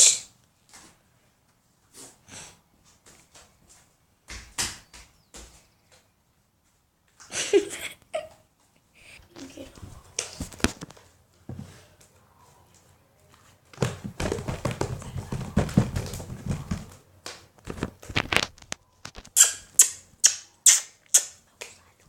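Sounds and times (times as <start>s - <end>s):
sharp crackly snaps: 16.9s - 22.0s.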